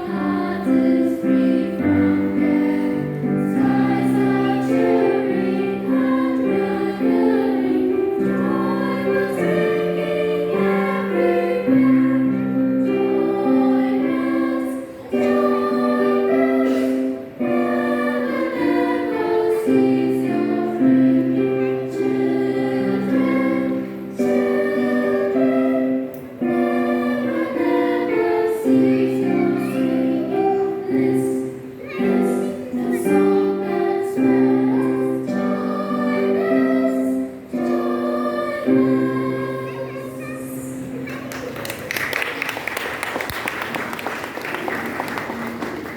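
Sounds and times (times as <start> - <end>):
children's choir singing a hymn: 0.0 - 45.9.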